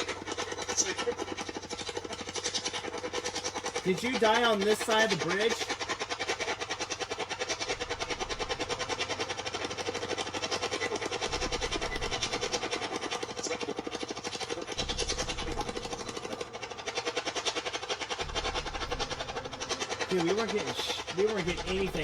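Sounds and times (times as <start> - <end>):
choppy radio static: 3.8 - 5.8, 10.4 - 22.0.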